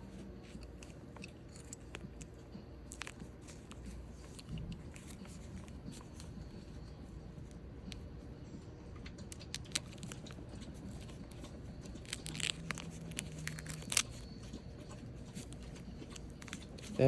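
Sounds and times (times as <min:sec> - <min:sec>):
packaging crinkling and rustling: 0:00.1 - 0:07.0, 0:09.0 - 0:17.0.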